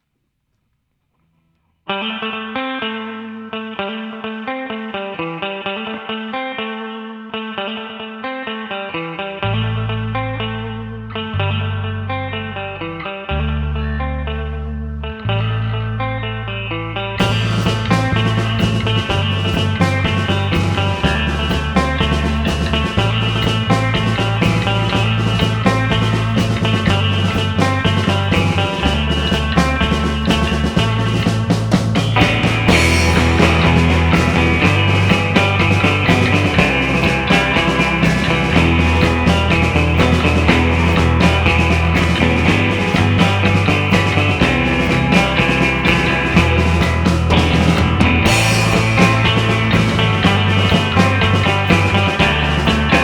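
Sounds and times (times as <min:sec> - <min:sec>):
bass line: 0:09.4 - 0:53.0
rock band playing live: 0:17.2 - 0:53.0.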